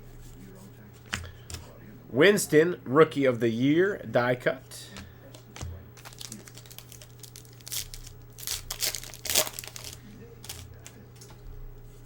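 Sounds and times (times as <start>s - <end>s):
steady low hum: 0.0s - 12.0s
cards shuffling: 4.9s - 11.3s
wrapper crinkling and tearing: 6.0s - 11.0s.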